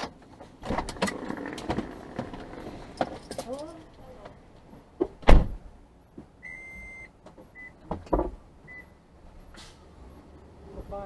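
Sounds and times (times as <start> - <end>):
car doors slamming shut: 5.0 - 5.7.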